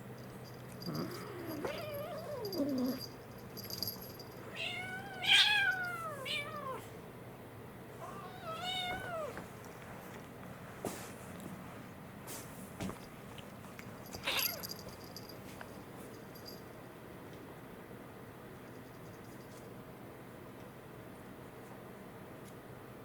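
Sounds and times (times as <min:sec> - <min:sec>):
kitten meowing: 0:14.2 - 0:14.7.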